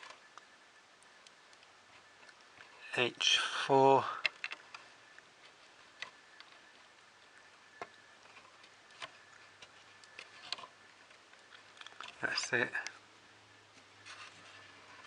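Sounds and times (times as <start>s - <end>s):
low steady hum: 0.0s - 15.0s
light clicks and taps: 4.1s - 13.0s.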